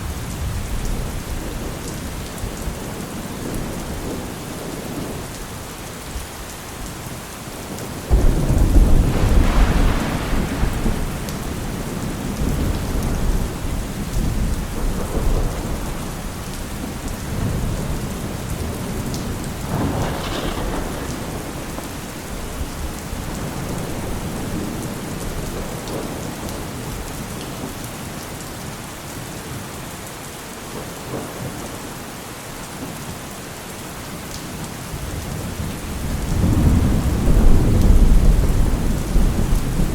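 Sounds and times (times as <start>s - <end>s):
heavy rain falling: 0.0s - 39.9s
rolling thunder: 7.7s - 27.7s, 35.0s - 39.9s.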